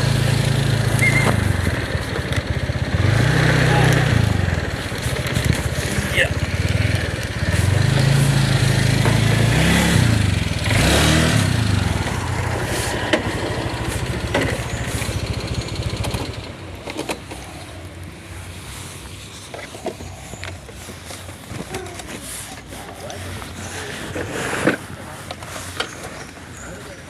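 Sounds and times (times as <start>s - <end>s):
motorcycle engine revving: 0.0s - 19.5s.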